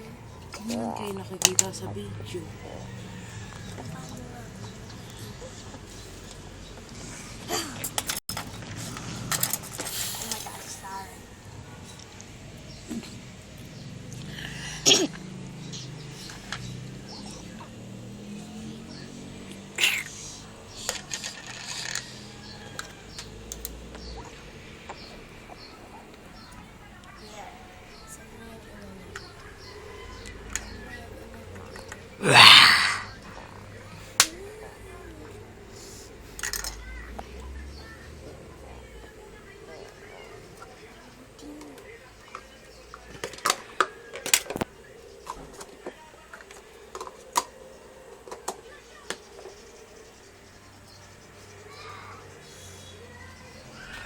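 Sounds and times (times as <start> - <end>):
small hard objects clicking and rattling: 20.8 - 23.8, 36.4 - 37.2.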